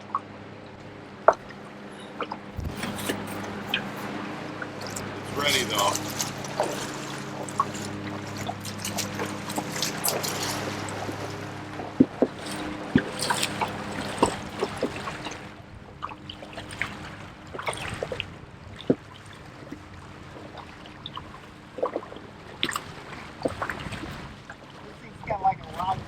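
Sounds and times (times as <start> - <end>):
water splashing and dripping: 2.2 - 19.4.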